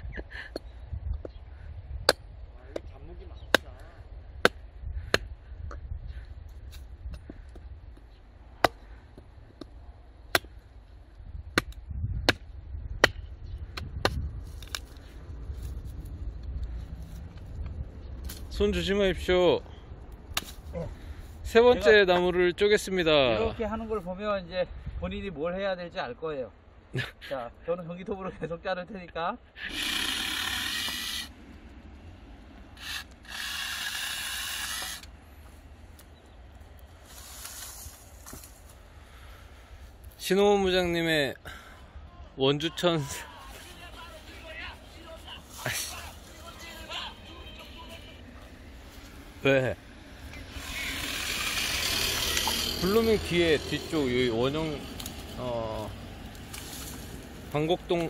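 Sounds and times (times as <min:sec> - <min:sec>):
chainsaw running: 0:29.6 - 0:31.3, 0:32.7 - 0:35.1, 0:50.4 - 0:55.3
chainsaw chain rattling: 0:50.6 - 0:53.8.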